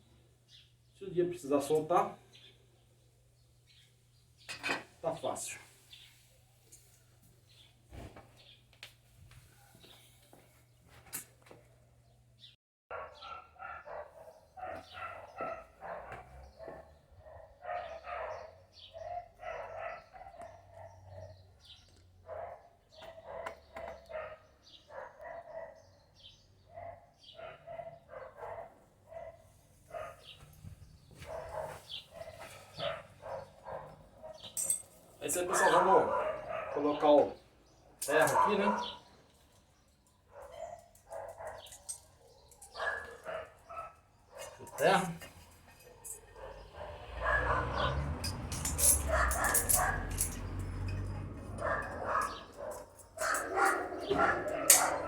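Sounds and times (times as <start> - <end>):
dog barking: 12.9 - 21.4, 22.2 - 30.4, 31.2 - 34.5, 35.4 - 37.0, 38.1 - 39.1, 40.3 - 45.0, 45.8 - 55.0.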